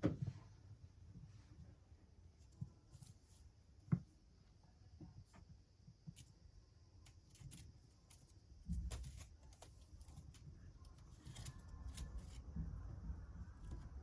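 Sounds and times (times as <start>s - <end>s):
kittens tapping and scuffing: 7.1s - 14.0s.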